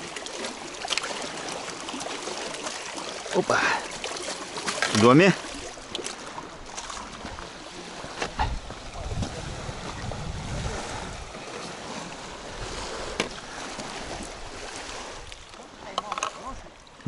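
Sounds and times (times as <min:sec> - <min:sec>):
lapping water: 0:00.0 - 0:17.0
wind gusting on microphone: 0:08.2 - 0:15.4.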